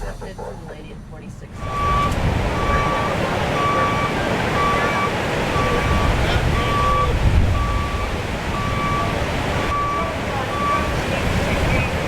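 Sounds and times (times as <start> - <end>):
loud low rumble: 0.0 - 4.8
backup alarm beeping: 0.0 - 12.0.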